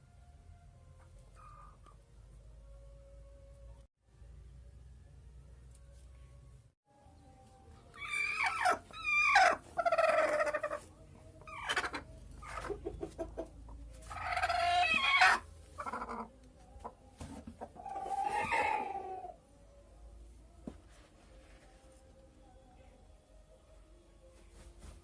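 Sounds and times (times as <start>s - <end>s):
chickens calling: 7.9s - 19.4s
chicken clucks: 8.0s - 19.4s.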